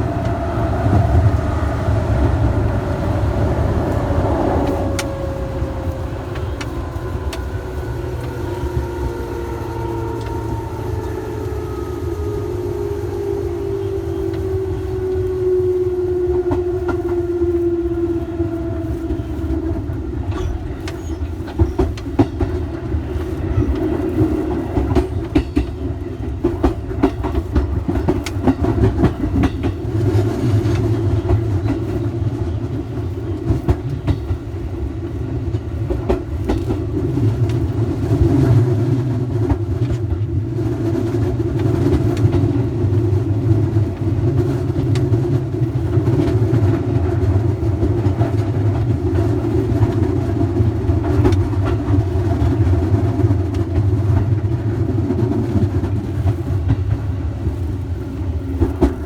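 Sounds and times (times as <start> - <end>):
electric train motor tone: 0.0 - 23.6
train wheels clicking over rail joints: 19.0 - 59.0.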